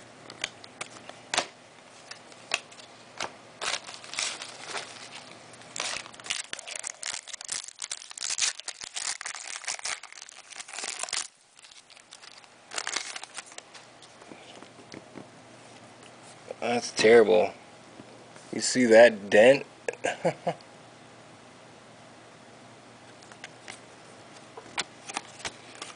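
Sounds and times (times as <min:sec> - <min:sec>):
wrapper crinkling and tearing: 0:03.6 - 0:13.7.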